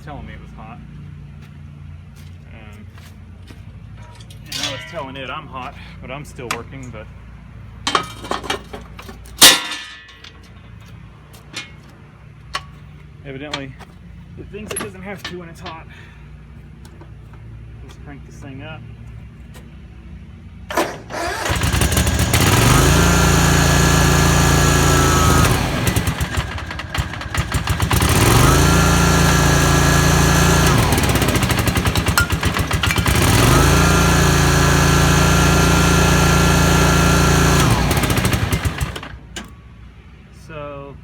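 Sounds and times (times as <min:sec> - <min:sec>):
mower deck whine: 0:04.0 - 0:07.1, 0:07.7 - 0:17.5, 0:20.6 - 0:40.1
mower engine revving: 0:20.7 - 0:39.4.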